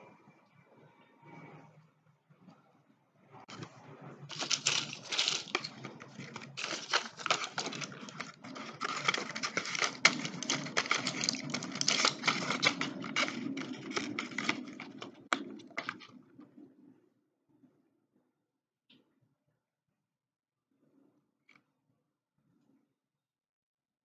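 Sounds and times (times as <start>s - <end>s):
medicine packaging crinkling: 4.3s - 16.1s.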